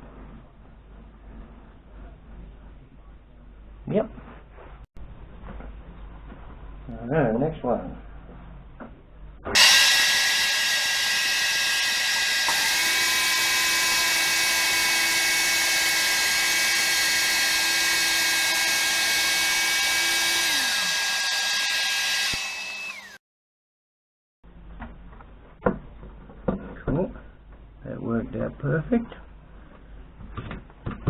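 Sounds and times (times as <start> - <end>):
power tool whining while cutting: 9.5 - 23.2.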